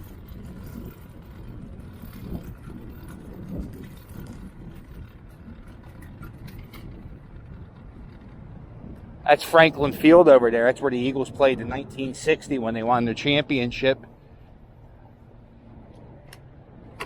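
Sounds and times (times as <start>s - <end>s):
wind on microphone: 0.0s - 16.9s
wheels rolling over pavement: 0.0s - 17.0s.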